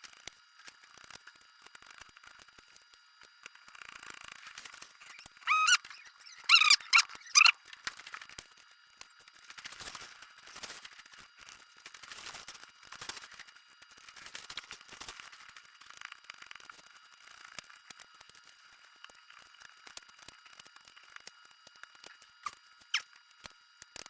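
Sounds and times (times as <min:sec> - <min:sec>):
knife squeaking through foam board: 0:05.0 - 0:07.6.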